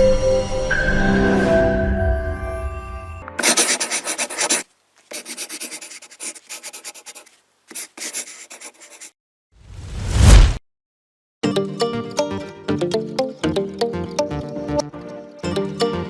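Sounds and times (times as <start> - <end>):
music: 0.0 - 3.4, 11.4 - 16.0
dry scratching: 3.4 - 9.1.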